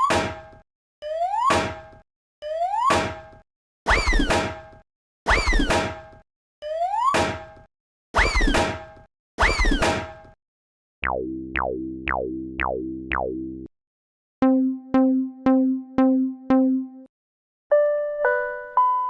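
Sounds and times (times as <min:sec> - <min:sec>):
cartoon boing: 0:11.0 - 0:13.5
plucked notes: 0:14.4 - 0:17.1.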